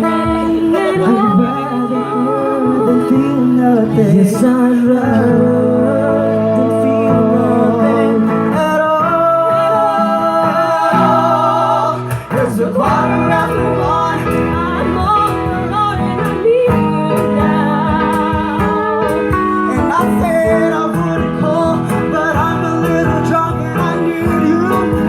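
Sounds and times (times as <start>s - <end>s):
guitar and sustained chords: 0.0s - 25.0s
person singing: 0.0s - 25.0s.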